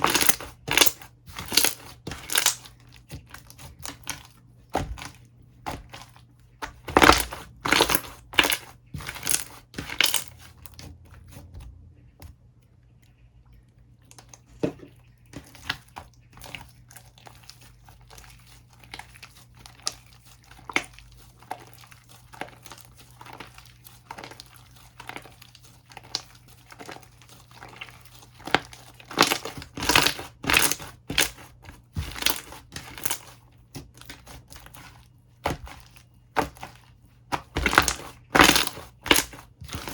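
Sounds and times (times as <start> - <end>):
slime crackling and popping: 0.0 - 5.1, 6.6 - 10.5, 18.0 - 31.4, 37.3 - 39.9.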